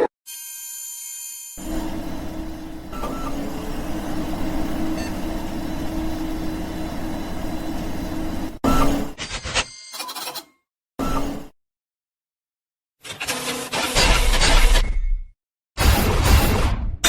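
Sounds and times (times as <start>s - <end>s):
mechanical rumble with low hum: 1.6s - 8.6s.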